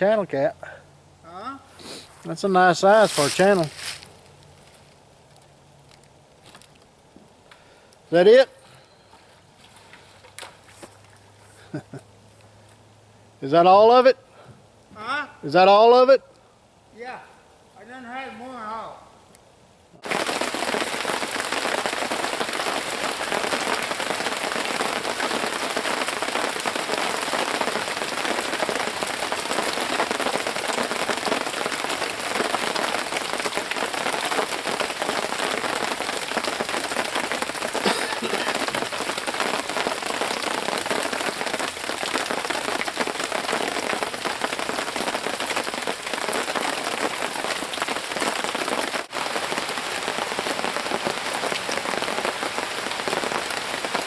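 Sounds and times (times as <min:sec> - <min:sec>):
rain falling: 0:02.3 - 0:08.6, 0:20.0 - 0:54.0.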